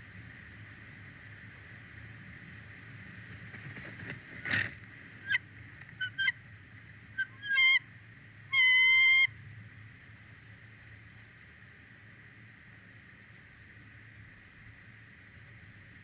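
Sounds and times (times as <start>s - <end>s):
rustle: 0.0s - 16.0s
eagle chirps: 6.0s - 6.3s, 7.2s - 7.8s, 8.5s - 9.3s
long eagle call: 6.0s - 6.3s, 7.2s - 7.8s, 8.5s - 9.3s.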